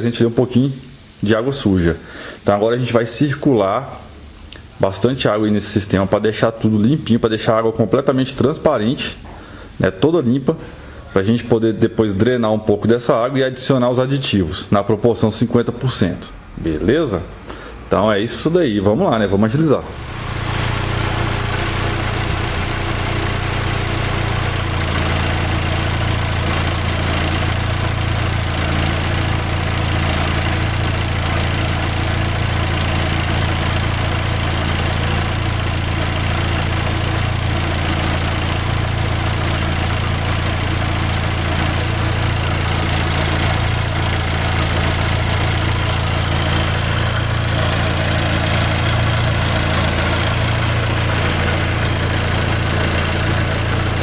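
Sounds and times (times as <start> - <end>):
car engine idling: 19.2 - 54.0.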